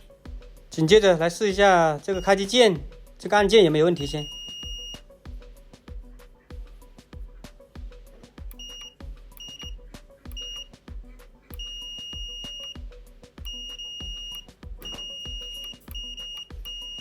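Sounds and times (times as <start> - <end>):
background music with steady beat: 0.0 - 17.0
multimeter continuity beeps: 2.0 - 2.8, 3.4 - 5.1, 8.4 - 10.9, 11.5 - 17.0.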